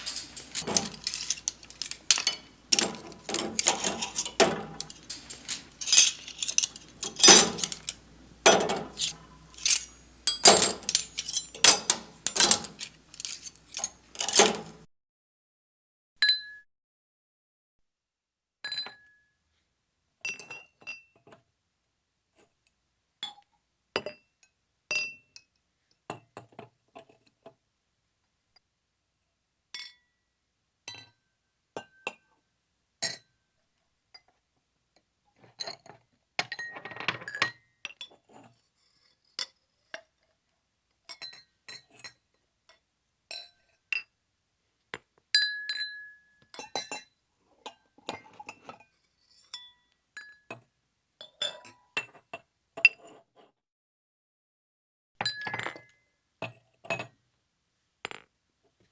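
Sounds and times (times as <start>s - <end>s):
glass items clinking: 0.0s - 14.8s.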